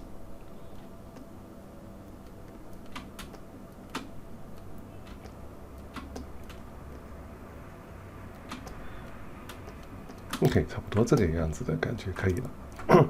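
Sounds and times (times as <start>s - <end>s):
faint low hum: 0.0s - 13.0s
computer keys clicking: 2.0s - 7.1s, 8.3s - 11.3s.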